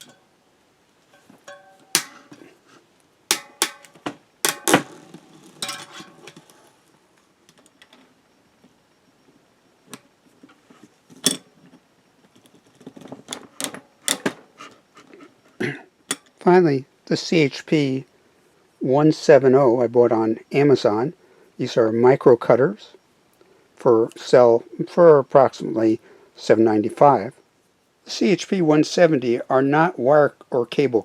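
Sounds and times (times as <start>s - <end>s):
metal tools clinking: 0.0s - 0.2s, 1.1s - 2.6s, 3.3s - 6.7s.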